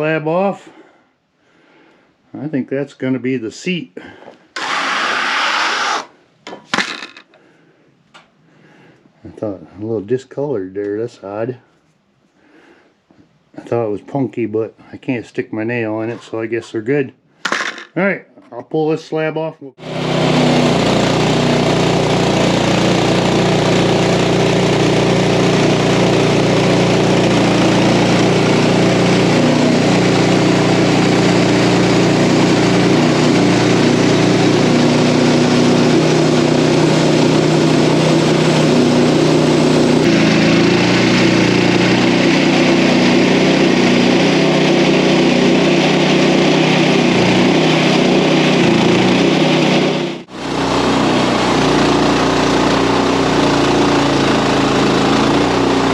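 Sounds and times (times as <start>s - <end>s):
sawmill engine running: 4.6s - 6.1s, 19.8s - 55.9s.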